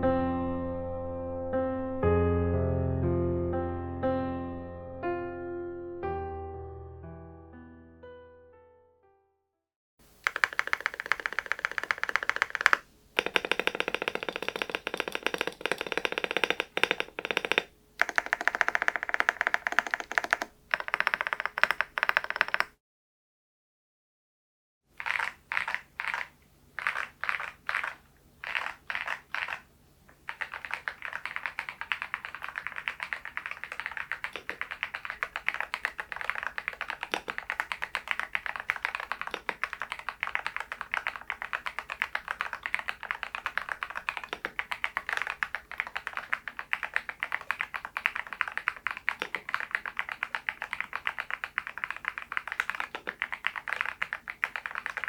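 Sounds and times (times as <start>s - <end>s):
mechanical keyboard typing: 10.1s - 22.8s, 25.0s - 55.0s.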